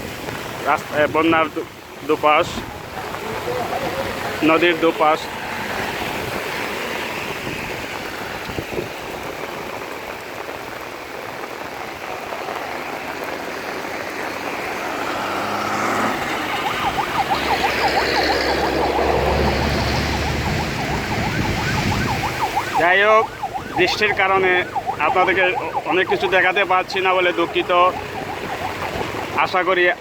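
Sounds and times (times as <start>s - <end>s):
rain hissing: 0.0s - 29.6s
road traffic: 0.0s - 30.0s
passing vehicle rumble: 2.5s - 9.6s, 11.8s - 30.0s
siren warbling: 12.4s - 29.8s.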